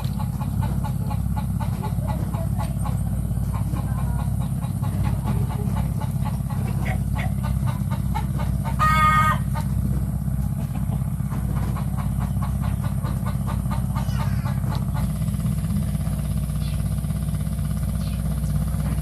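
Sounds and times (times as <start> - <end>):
small engine running: 0.0 - 19.0
chicken call: 6.8 - 9.7.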